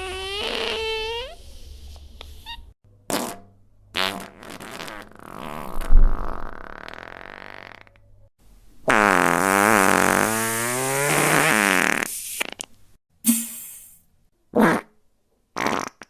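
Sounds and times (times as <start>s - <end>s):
fart sounds: 0.0s - 1.4s, 3.1s - 8.0s, 8.9s - 12.7s, 14.6s - 14.9s, 15.6s - 16.0s.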